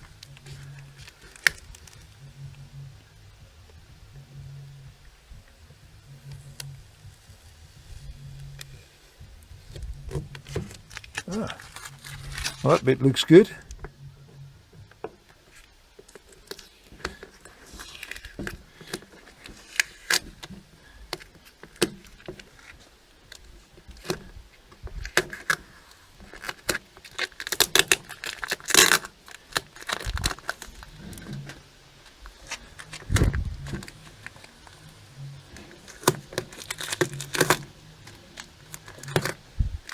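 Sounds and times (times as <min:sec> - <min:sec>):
tape and paper peeling and crumpling: 0:00.0 - 0:02.6, 0:06.1 - 0:14.0, 0:15.3 - 0:39.9
paper rustle: 0:00.1 - 0:02.1, 0:09.6 - 0:13.6, 0:15.5 - 0:24.3, 0:25.0 - 0:39.9.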